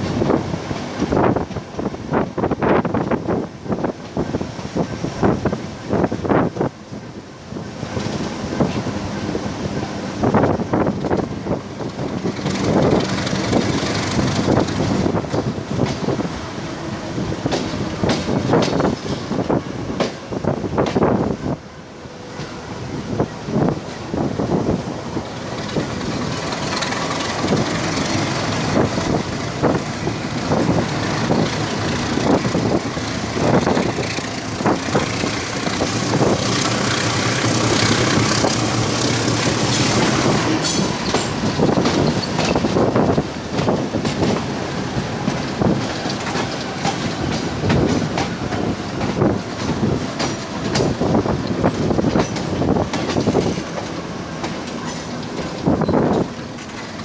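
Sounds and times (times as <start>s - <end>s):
train wheels clacking on rails: 7.6s - 21.6s, 22.2s - 57.0s.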